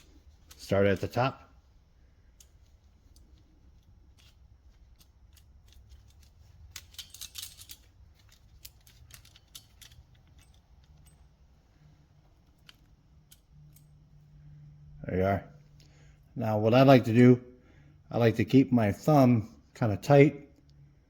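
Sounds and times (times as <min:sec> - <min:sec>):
chain links clicking: 0:02.2 - 0:14.2.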